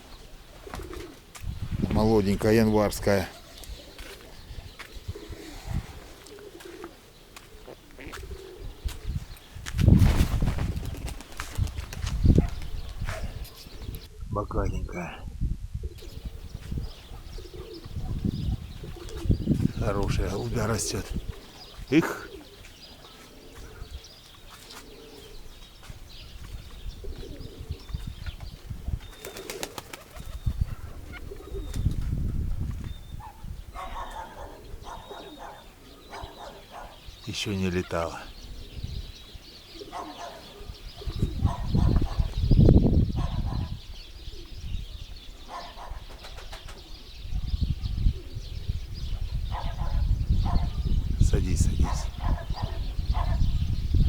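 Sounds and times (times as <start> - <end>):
wind rumbling on microphone: 0.0 - 2.9, 3.6 - 6.3, 7.6 - 21.9, 25.2 - 29.3, 30.1 - 37.2, 38.3 - 54.0
pigeons cooing: 0.0 - 14.3, 15.8 - 54.0
small birds chirping: 0.0 - 54.0
wing flaps: 9.7 - 13.3, 29.2 - 30.6.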